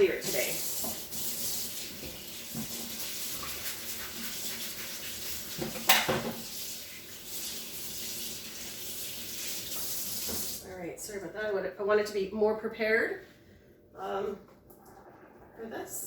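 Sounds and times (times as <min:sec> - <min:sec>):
dishes clattering: 0:05.6 - 0:06.4
dishes knocking: 0:05.6 - 0:06.4.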